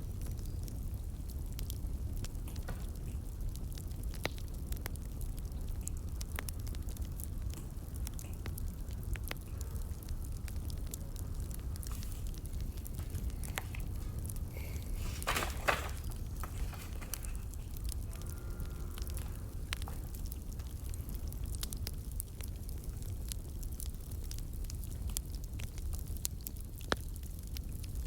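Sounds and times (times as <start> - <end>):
low steady fire rumble: 0.0 - 28.0
wood fire crackling: 0.0 - 28.0.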